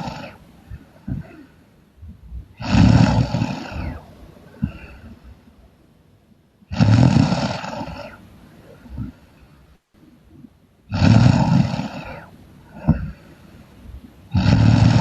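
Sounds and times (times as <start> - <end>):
woman snoring loudly: 0.0 - 0.4, 2.6 - 4.0, 6.7 - 8.2, 10.9 - 12.2, 14.3 - 15.0.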